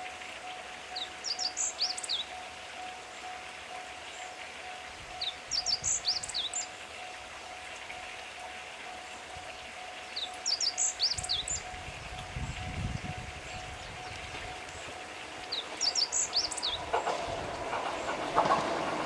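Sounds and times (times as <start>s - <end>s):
train rumble: 0.0s - 19.0s
bird chirping: 0.4s - 3.4s, 4.1s - 7.1s, 9.5s - 11.8s, 12.5s - 17.1s.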